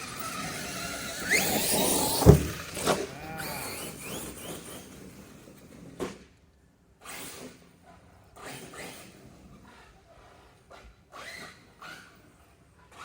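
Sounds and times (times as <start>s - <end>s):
rc car electric motor whining: 0.0s - 5.8s
rc car hitting the ground: 1.2s - 3.8s
small knock: 2.2s - 2.6s.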